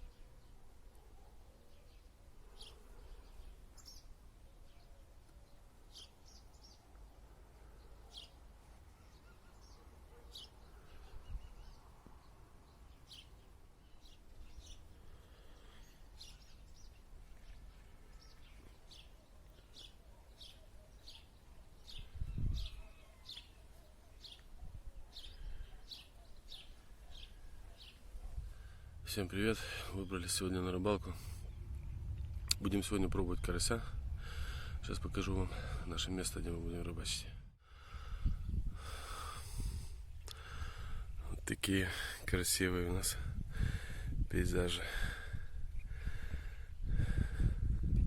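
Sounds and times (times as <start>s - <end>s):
birds chirping: 0.0s - 47.3s
wind on microphone: 21.9s - 23.0s, 28.0s - 36.0s, 36.9s - 41.2s, 43.0s - 48.0s.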